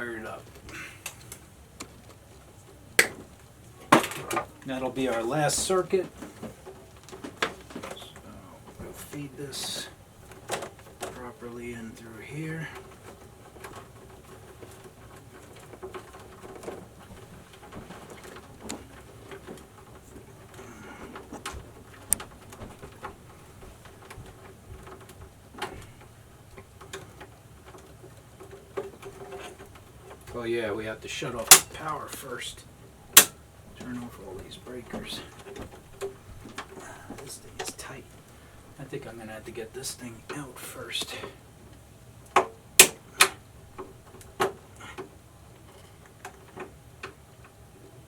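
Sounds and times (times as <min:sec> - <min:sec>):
electrical cable clicking and knocking: 0:00.0 - 0:48.0
tool clicking on cable lock: 0:33.2 - 0:33.4, 0:42.8 - 0:43.4.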